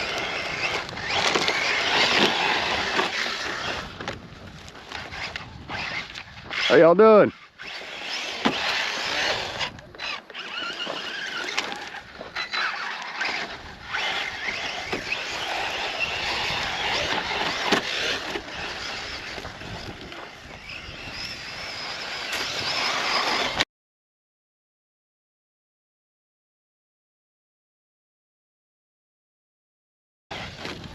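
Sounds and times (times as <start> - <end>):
electric motor whining: 0.0 - 23.6
tyre and ground noise: 0.0 - 23.6, 30.3 - 30.9.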